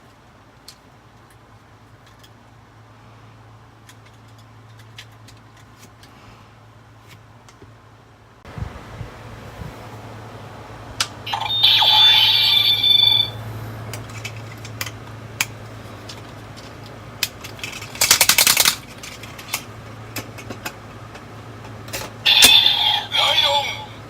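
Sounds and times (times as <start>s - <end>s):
toy electronic tone: 11.3s - 13.5s, 22.3s - 23.9s
plastic toy clicks: 17.5s - 19.6s.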